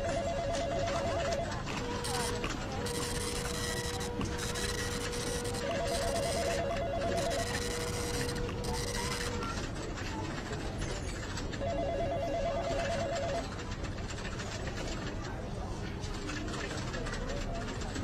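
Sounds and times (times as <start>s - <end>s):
telephone ringing with warbling trill: 0.0s - 9.5s, 11.6s - 13.4s
office background noise: 0.0s - 18.0s.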